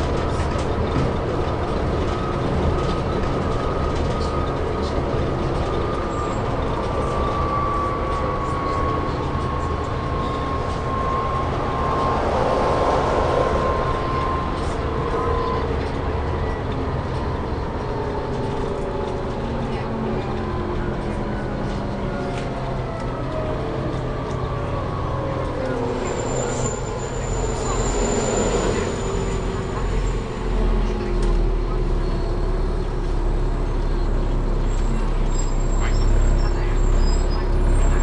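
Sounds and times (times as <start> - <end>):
bus engine rumble: 0.0 - 38.0
high groaning whine: 0.9 - 19.1, 19.8 - 31.6.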